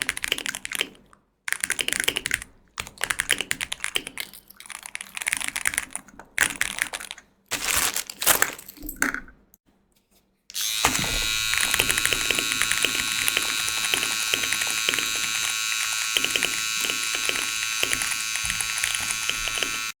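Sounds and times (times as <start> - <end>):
computer keyboard typing: 0.0 - 7.2, 11.6 - 20.0
steady buzzing noise: 10.6 - 20.0.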